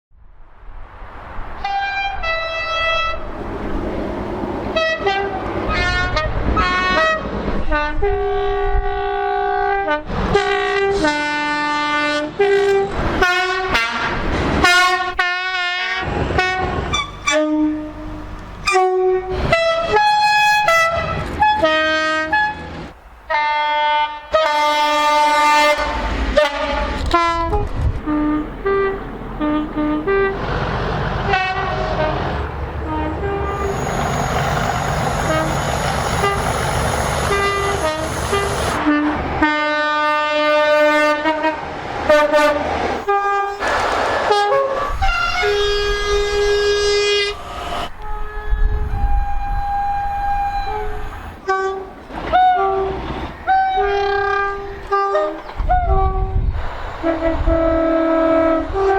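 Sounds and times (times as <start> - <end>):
rush of moving train: 0.1 - 58.9
train horn blasts: 1.6 - 3.3, 4.7 - 30.4, 31.2 - 56.4, 57.0 - 58.9.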